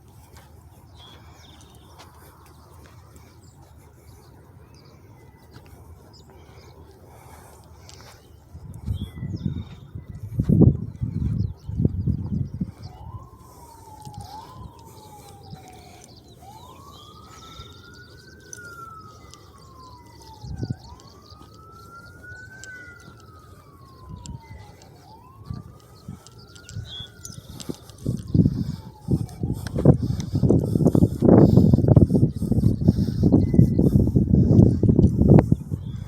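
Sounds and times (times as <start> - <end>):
siren wailing: 0.0 - 36.0.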